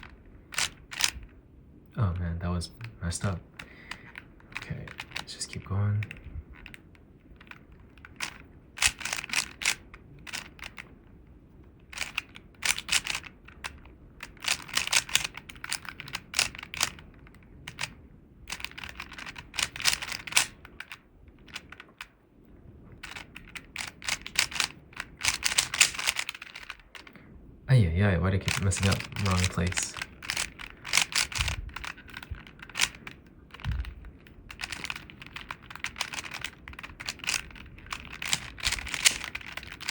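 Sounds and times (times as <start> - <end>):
puzzle cube plastic clicks: 0.0 - 1.4, 2.1 - 11.0, 11.8 - 22.1, 23.0 - 27.2, 28.3 - 39.9.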